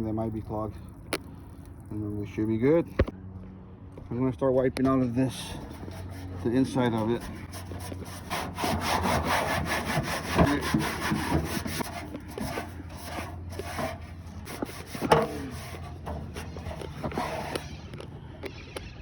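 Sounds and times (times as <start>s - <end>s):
low steady hum: 0.0s - 19.0s
rag scrubbing inside metal cabinet: 5.3s - 18.0s.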